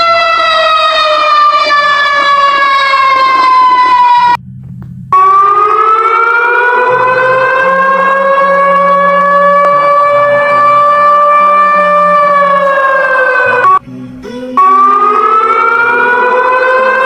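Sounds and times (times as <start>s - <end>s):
civil defense siren winding up: 0.0s - 4.5s, 5.1s - 17.0s
low steady hum: 4.4s - 5.8s.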